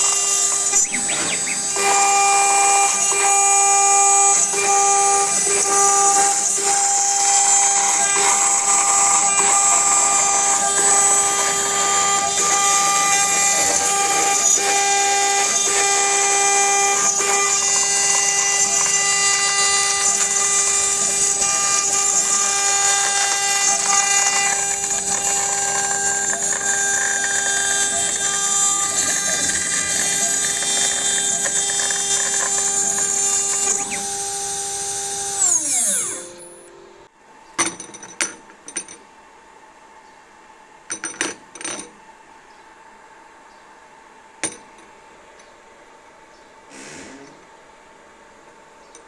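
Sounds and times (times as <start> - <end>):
machine spindle whine: 0.0 - 37.1
milling cutting noise: 0.0 - 37.1.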